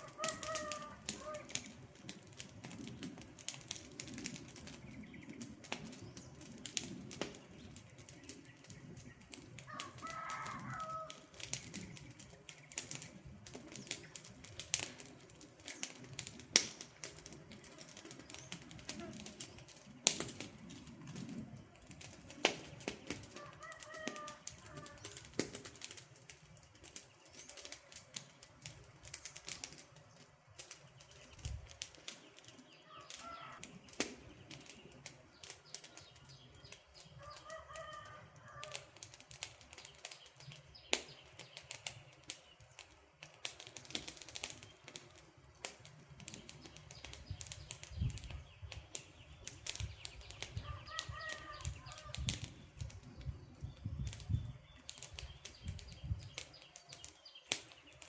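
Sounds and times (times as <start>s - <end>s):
bird calling: 0.0s - 1.7s, 32.8s - 33.7s, 50.1s - 52.2s
campfire crackling and popping: 0.0s - 58.0s.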